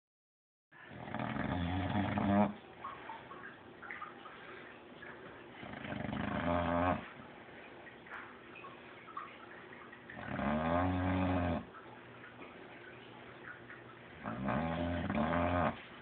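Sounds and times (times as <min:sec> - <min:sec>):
dog snoring: 0:00.9 - 0:02.6, 0:05.6 - 0:07.1, 0:10.2 - 0:11.7, 0:14.2 - 0:15.8.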